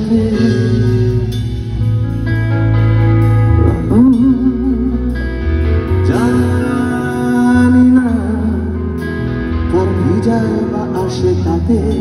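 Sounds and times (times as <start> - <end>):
steady bass line: 0.0 - 12.0
person singing: 3.6 - 12.0.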